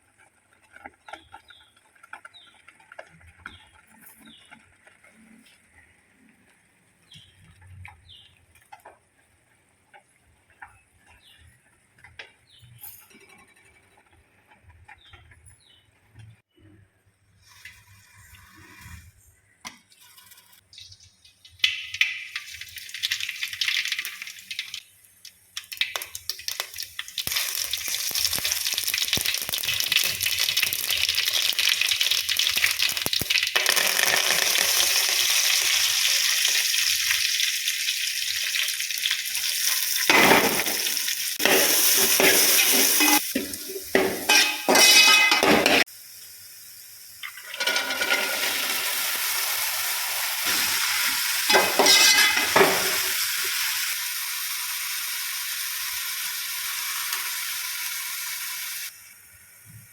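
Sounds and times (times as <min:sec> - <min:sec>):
food sizzling in a hot pan: 0:20.0 - 0:59.9.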